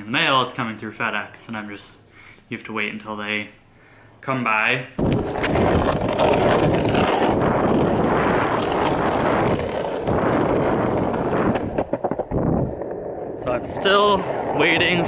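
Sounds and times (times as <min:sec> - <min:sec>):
longboard wheels rolling on pavement: 0:05.0 - 0:15.0.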